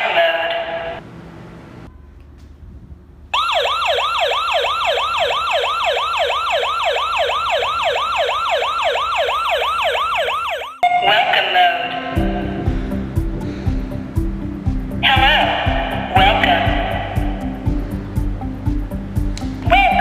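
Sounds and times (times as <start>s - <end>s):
electronic siren alarm: 3.4s - 11.9s.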